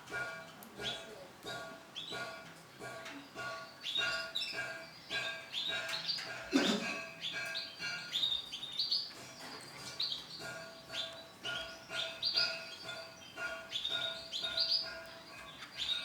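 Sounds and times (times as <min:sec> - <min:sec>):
canary chirping: 0:03.2 - 0:06.5, 0:07.1 - 0:16.0.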